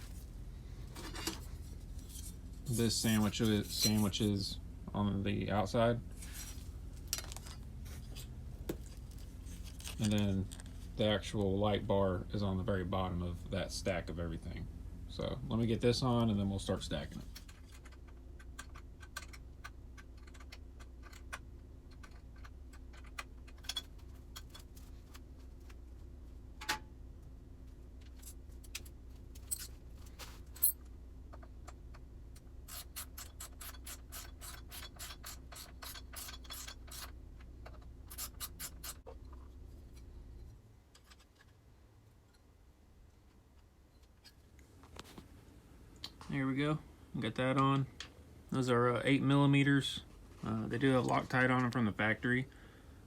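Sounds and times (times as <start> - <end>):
steady low hum: 0.0 - 53.0
metal clicks and knocks: 17.4 - 24.7.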